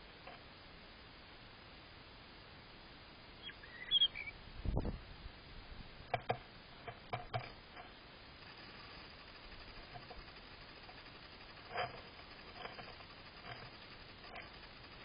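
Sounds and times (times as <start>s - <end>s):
birds chirping: 3.4s - 4.4s.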